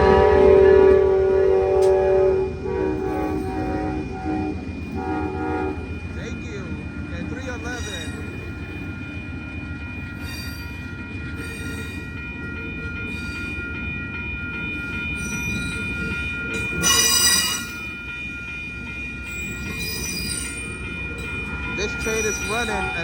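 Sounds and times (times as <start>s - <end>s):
train rumbling past: 0.0s - 23.0s
high-pitched wheel squeal: 16.8s - 17.8s, 19.3s - 20.7s.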